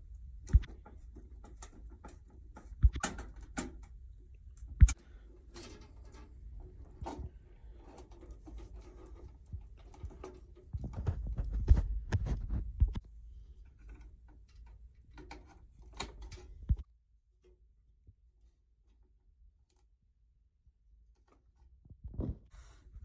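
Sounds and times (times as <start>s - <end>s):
small clicks and knocks: 0.4s - 17.5s.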